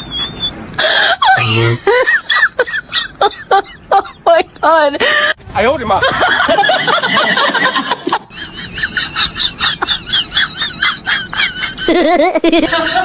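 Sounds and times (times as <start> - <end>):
animal high wavering cries: 0.0 - 0.6.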